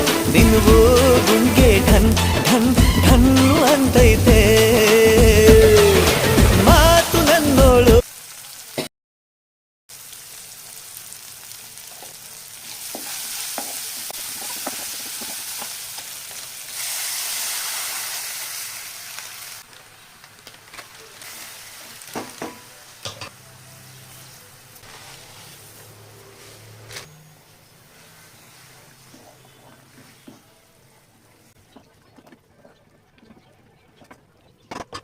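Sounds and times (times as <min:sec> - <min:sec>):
food sizzling in hot oil: 0:00.0 - 0:03.0, 0:05.6 - 0:08.9, 0:09.9 - 0:30.3
spoon stirring against pan: 0:11.9 - 0:16.5, 0:27.8 - 0:30.6.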